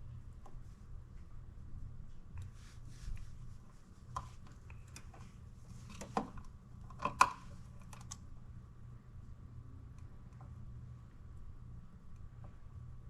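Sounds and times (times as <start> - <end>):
wires rustling and scraping: 2.1 - 8.2.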